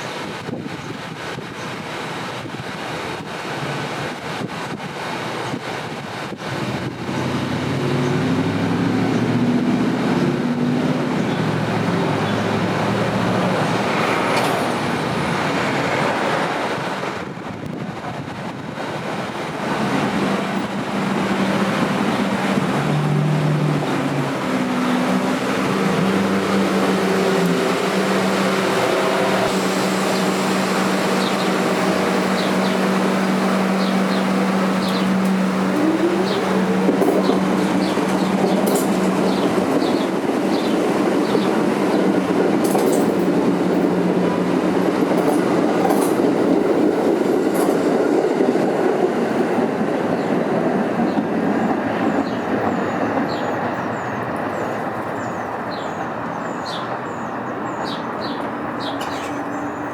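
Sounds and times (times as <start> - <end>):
subway train running: 0.0 - 59.9.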